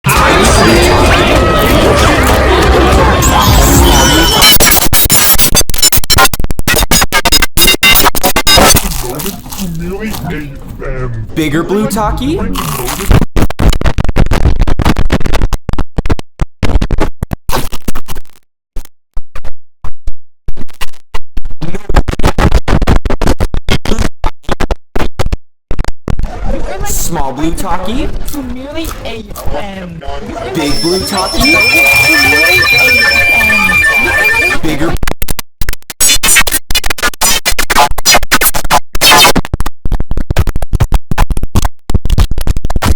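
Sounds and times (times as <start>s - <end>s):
chopped stuttering computer shutdown sound: 30.6s - 35.0s.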